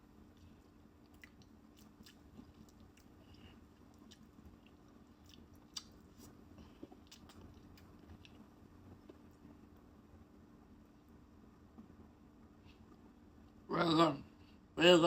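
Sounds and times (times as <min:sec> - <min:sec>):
faint steady hum: 0:00.0 - 0:15.0
person chewing: 0:00.3 - 0:09.3.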